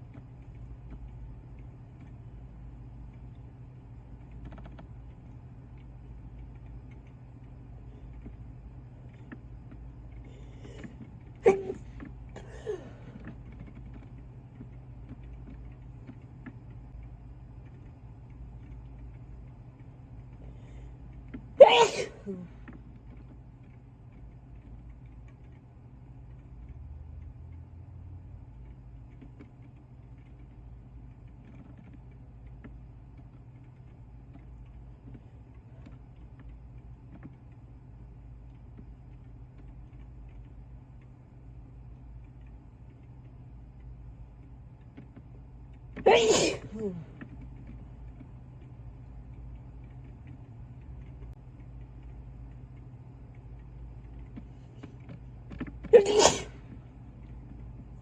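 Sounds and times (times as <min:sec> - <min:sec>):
person sneezing: 0:10.7 - 0:11.8, 0:21.6 - 0:22.5, 0:46.0 - 0:47.1, 0:56.0 - 0:56.6.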